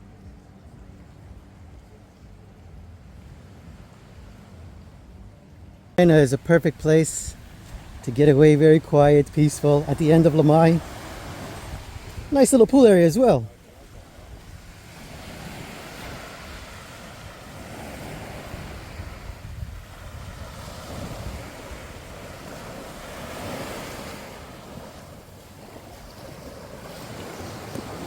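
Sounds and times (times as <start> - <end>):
wind rumbling on microphone: 0.0 - 28.0
sea surf washing onto beach: 6.0 - 28.0.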